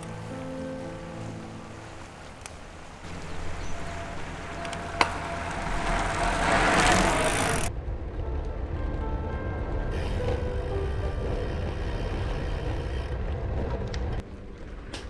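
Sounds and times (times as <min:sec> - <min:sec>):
vehicle passing with rushing hiss: 0:00.0 - 0:07.7.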